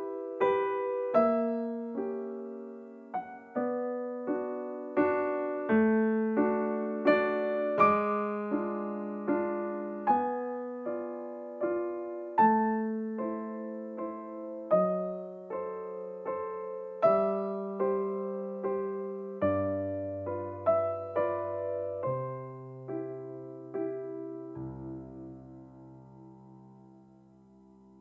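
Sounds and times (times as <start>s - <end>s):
gentle piano music: 0.0s - 28.0s.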